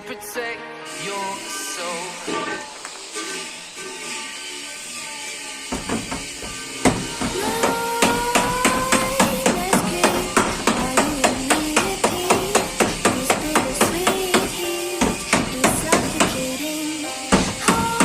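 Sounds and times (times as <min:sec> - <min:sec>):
hammer beating sheet metal: 0:05.6 - 0:18.0.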